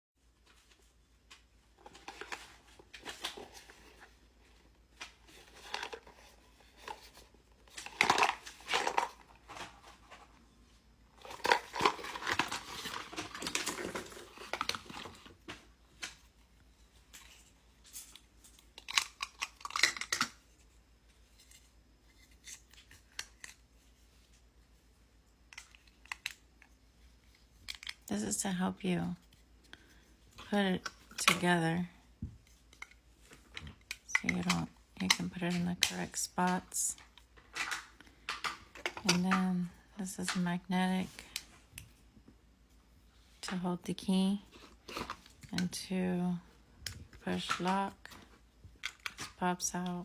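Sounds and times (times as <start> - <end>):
plastic packaging rustling: 1.7 - 10.4, 11.2 - 16.3.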